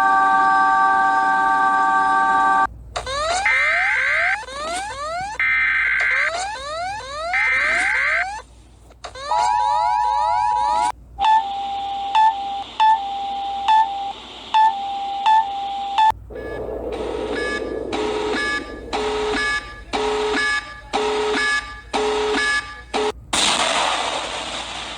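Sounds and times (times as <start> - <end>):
held tone with higher beeps: 16.3 - 21.8
repeating electronic beeps: 16.3 - 22.7
two-tone attention signal: 16.3 - 22.8.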